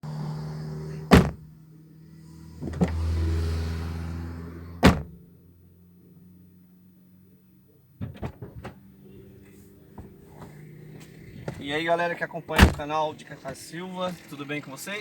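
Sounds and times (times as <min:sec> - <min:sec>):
window stopping thunk: 0:01.1 - 0:01.5, 0:04.8 - 0:05.2, 0:12.6 - 0:12.8.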